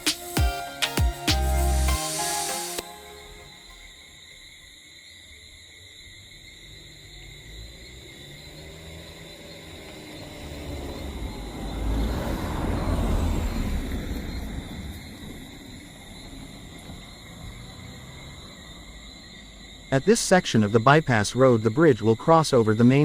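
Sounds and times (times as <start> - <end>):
vehicle driving past: 7.4 - 19.6.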